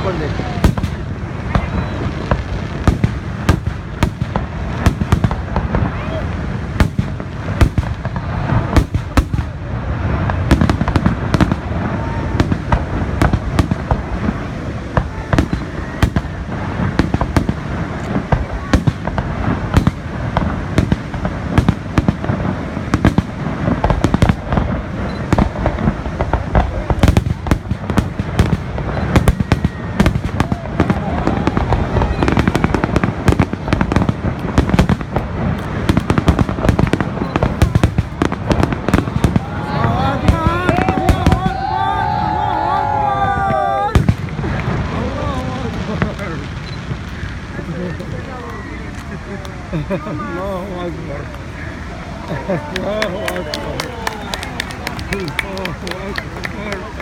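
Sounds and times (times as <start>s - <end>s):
fireworks bangs: 0.0s - 57.0s.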